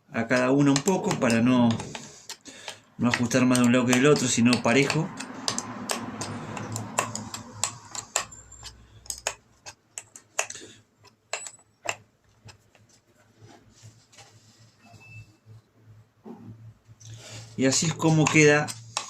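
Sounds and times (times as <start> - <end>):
wrench clicking on bolts: 0.4 - 12.0.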